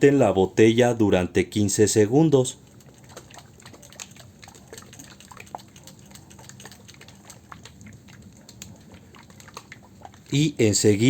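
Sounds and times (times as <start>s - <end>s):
liquid sloshing in shaken bottle: 2.4s - 11.0s
small irregular clicks: 2.6s - 10.4s.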